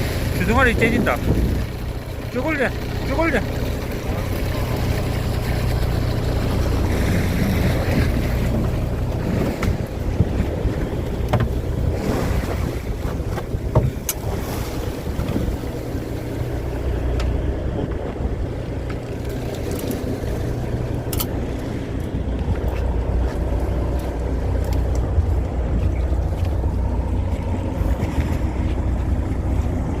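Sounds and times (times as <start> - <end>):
wind on microphone: 0.0 - 1.8, 6.8 - 16.6, 21.3 - 30.0
boat engine humming: 0.0 - 30.0.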